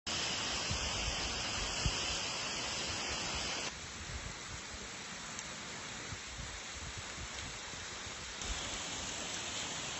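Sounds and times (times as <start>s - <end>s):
waterfall rushing: 0.1s - 3.8s, 8.0s - 9.9s
wind rumbling on microphone: 0.2s - 4.9s, 5.9s - 9.9s.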